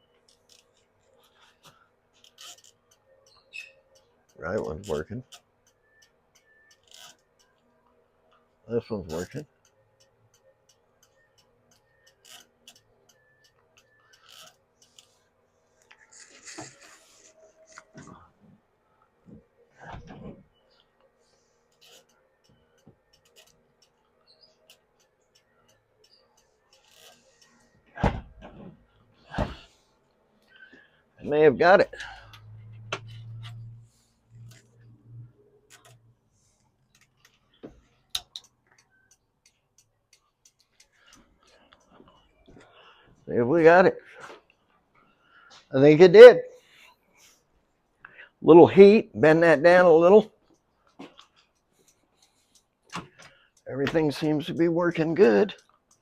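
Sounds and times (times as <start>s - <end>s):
turn signal flasher ticking: 2.2s - 15.1s, 36.8s - 42.0s, 50.4s - 56.0s.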